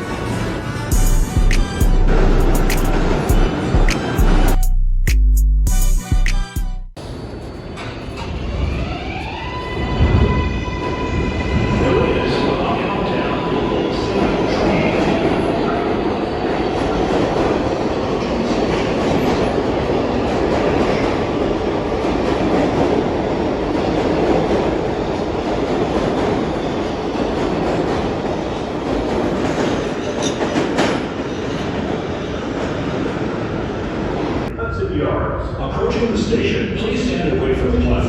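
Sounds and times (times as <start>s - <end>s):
subway train wheels rumbling: 0.0s - 4.6s, 7.0s - 38.0s
wheels clacking on rail: 16.7s - 32.8s.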